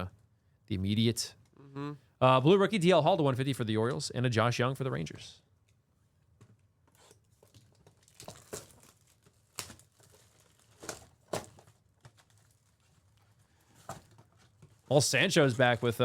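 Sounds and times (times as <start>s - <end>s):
wrappers crinkling and tearing: 7.0s - 16.0s.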